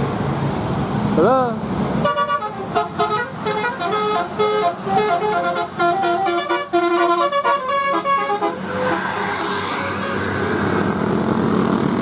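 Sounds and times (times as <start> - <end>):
multi-tone air horn tune: 2.0 - 9.0.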